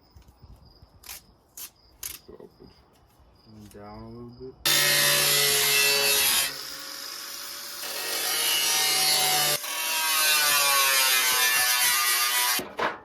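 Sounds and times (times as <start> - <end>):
angle grinder grinding steel: 4.7 - 12.6.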